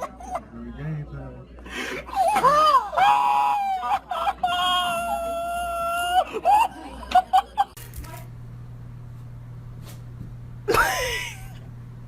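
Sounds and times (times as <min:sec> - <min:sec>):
low hum: 0:07.8 - 0:12.0.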